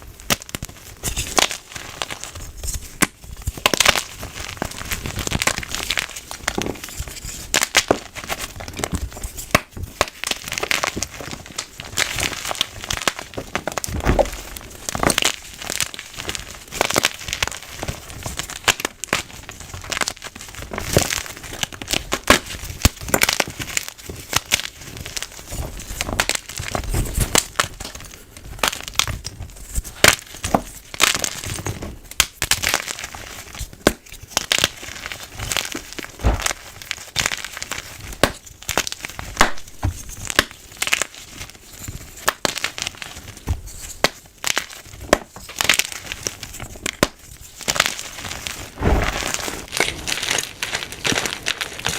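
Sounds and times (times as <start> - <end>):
chalk being crushed and crunching: 32.2 - 51.9.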